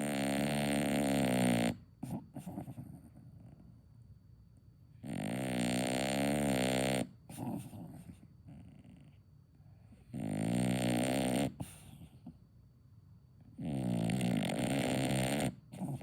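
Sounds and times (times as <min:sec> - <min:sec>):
dog snoring: 0:00.0 - 0:03.7, 0:05.0 - 0:09.2, 0:09.9 - 0:12.4, 0:13.5 - 0:16.0
dog breathing: 0:07.3 - 0:12.3.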